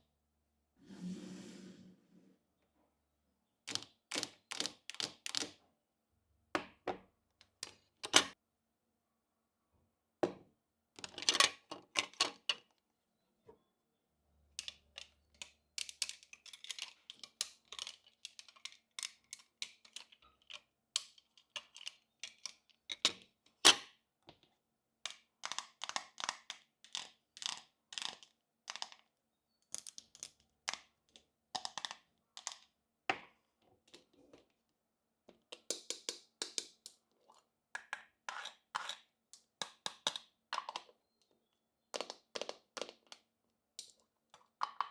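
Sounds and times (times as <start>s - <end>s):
plastic toy pieces clicking: 3.7s - 5.6s, 14.6s - 23.2s, 25.1s - 29.0s, 31.6s - 32.7s.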